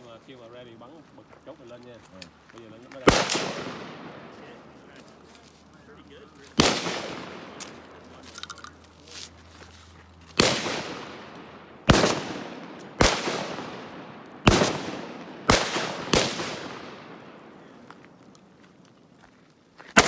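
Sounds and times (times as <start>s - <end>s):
rifle shots with echo: 3.0s - 5.2s, 6.5s - 8.3s, 10.4s - 18.3s.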